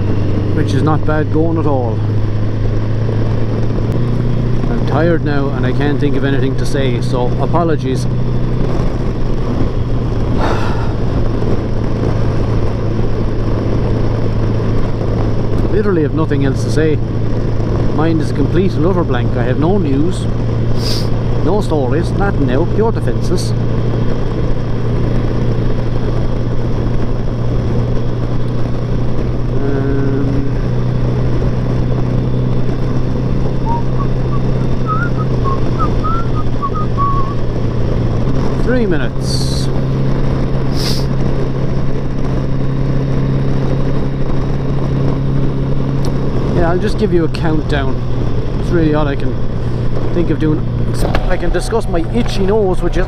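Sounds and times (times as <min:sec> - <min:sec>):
heavy wind noise: 0:00.0 - 0:53.0
motorcycle engine running: 0:00.0 - 0:53.0
brief pitched tone: 0:33.6 - 0:37.4
short chirps: 0:33.6 - 0:37.4.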